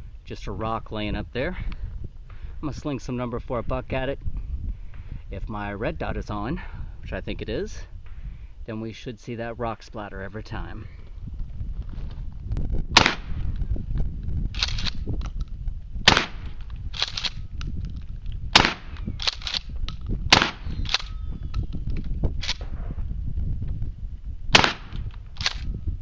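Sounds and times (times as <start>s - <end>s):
shotgun shots: 13.0s - 13.4s, 16.0s - 17.3s, 18.5s - 19.6s, 20.3s - 21.2s, 24.5s - 25.6s.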